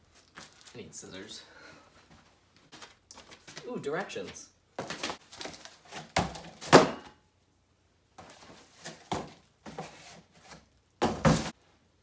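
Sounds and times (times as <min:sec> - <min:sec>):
packaging rustling: 0:00.1 - 0:00.8, 0:04.8 - 0:06.7, 0:08.2 - 0:11.5
parts clattering: 0:08.2 - 0:11.6.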